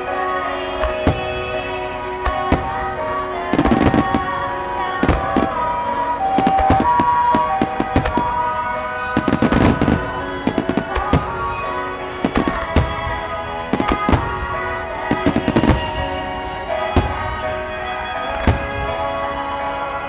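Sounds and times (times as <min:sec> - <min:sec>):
background music: 0:00.0 - 0:20.0
fireworks bursting and crackling: 0:00.0 - 0:20.0.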